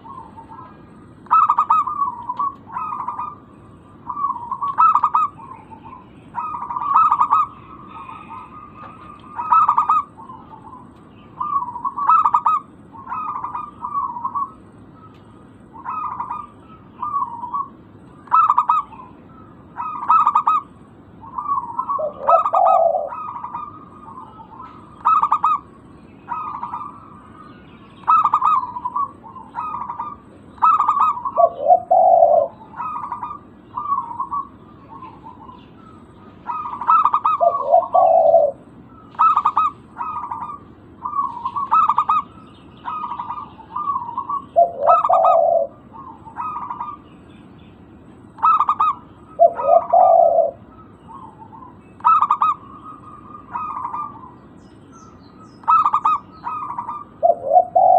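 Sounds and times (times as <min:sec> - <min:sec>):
dove cooing: 0:00.0 - 0:47.1, 0:48.1 - 0:57.9.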